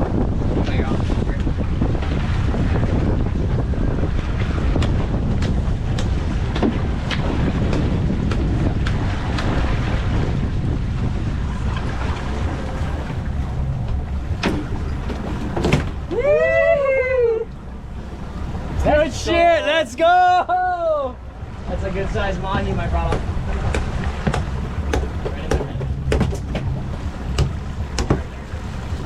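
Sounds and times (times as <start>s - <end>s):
water rushing past boat: 0.0s - 29.0s
wind buffeting microphone: 0.0s - 29.0s
sharp knocks and clicks: 23.1s - 28.3s.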